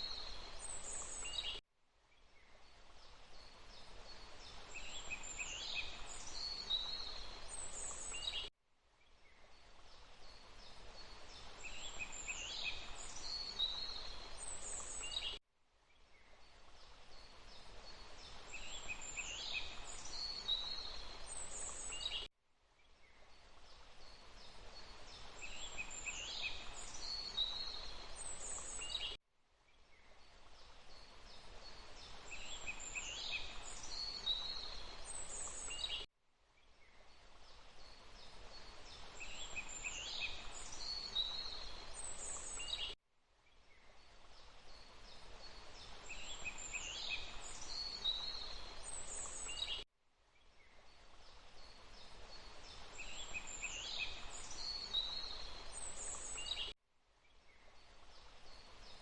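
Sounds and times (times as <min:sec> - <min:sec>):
songbirds chirping: 0:00.0 - 0:59.0
running water: 0:44.0 - 0:49.6.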